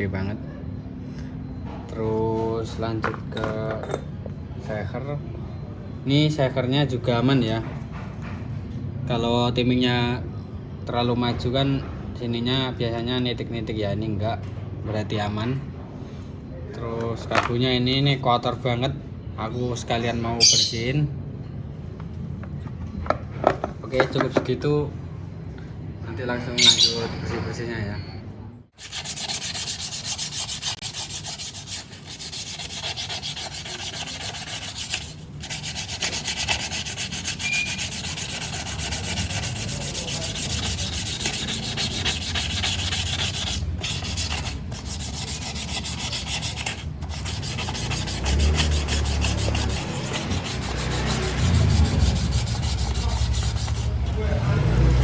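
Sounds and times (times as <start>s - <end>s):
scrubbing carbon off metal parts: 28.8s - 55.0s.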